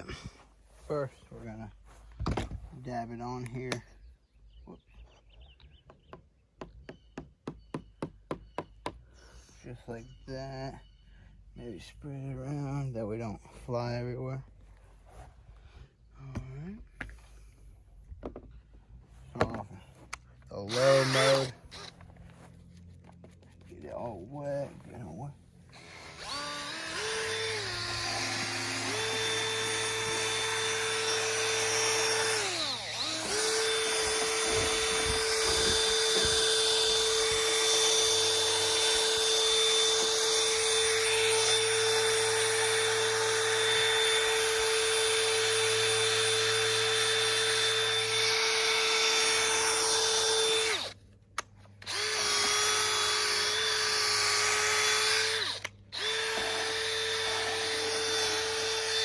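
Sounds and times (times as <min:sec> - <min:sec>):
electric drill whining: 0:20.6 - 0:22.4, 0:25.7 - 0:51.0, 0:51.8 - 0:59.0.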